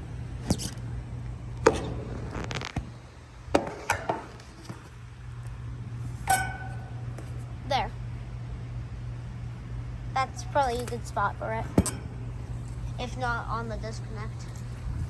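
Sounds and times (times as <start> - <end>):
steady low hum: 0.0 - 15.0
short metallic ring: 6.2 - 7.6.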